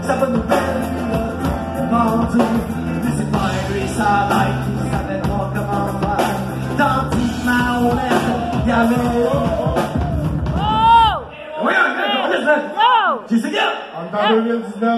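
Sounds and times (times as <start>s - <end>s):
person singing: 0.0s - 11.2s
bass line: 0.0s - 11.3s
punk rock band playing: 0.0s - 11.4s.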